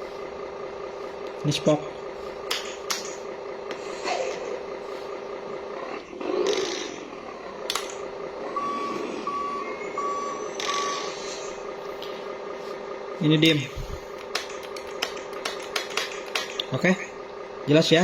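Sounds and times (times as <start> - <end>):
engine idling: 0.0 - 18.0
reversing beeper beeps: 8.4 - 11.6.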